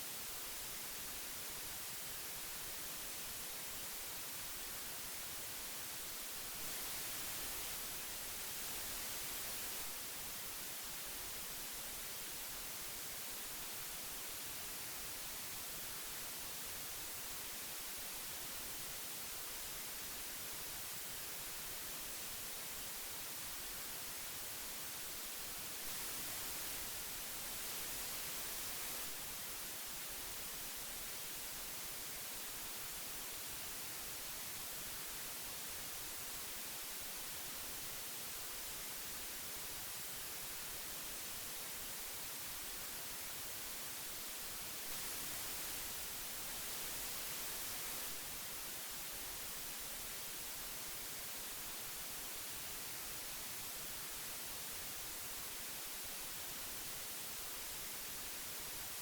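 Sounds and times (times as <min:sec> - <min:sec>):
tape hiss: 0:00.0 - 0:59.0.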